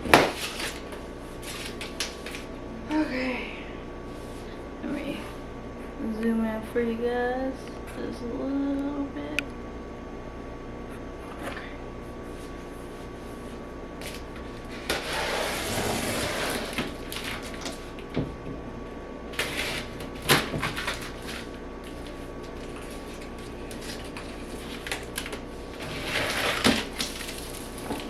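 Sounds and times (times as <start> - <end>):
cardboard box rustling and scraping: 14.8 - 17.4.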